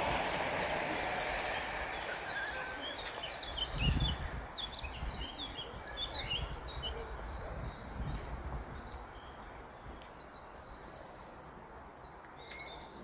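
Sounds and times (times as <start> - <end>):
small birds chirping: 1.5 - 13.0.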